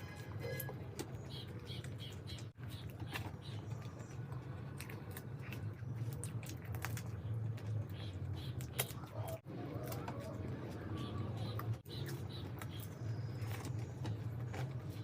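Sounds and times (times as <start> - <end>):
person chewing: 0.0 - 15.0.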